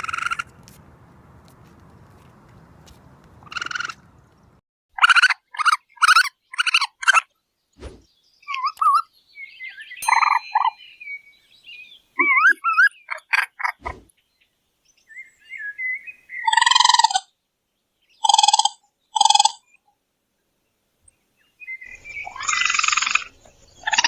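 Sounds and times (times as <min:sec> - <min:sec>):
raccoon harsh calls: 0:00.0 - 0:00.5, 0:03.4 - 0:04.0, 0:05.0 - 0:07.2, 0:16.4 - 0:17.3, 0:18.2 - 0:19.6, 0:22.2 - 0:24.0
raccoon trilling chirps: 0:03.4 - 0:04.0, 0:12.2 - 0:13.8, 0:16.4 - 0:17.3, 0:18.2 - 0:19.6, 0:21.8 - 0:24.0.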